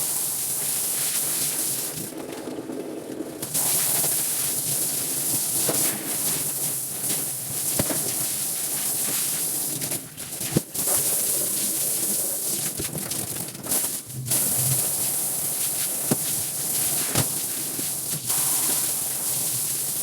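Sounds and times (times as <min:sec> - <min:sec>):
water spraying hiss: 0:14.3 - 0:20.0.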